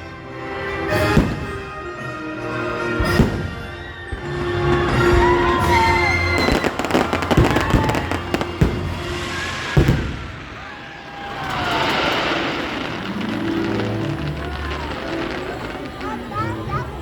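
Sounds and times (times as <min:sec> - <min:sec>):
fireworks bangs and crackles: 0:00.0 - 0:17.0
show music: 0:11.5 - 0:17.0.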